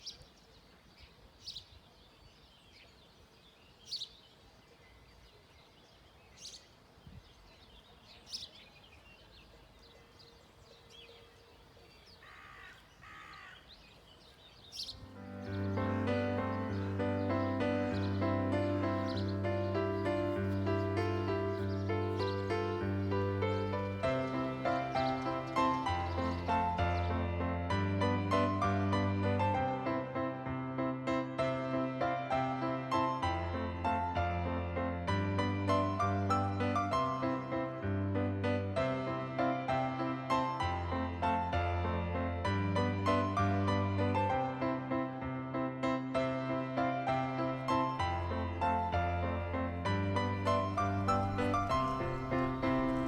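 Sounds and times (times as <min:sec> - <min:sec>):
faint outdoor background: 0:00.0 - 0:53.0
low harsh bird calls: 0:07.4 - 0:27.2, 0:47.8 - 0:53.0
piano music: 0:14.9 - 0:53.0.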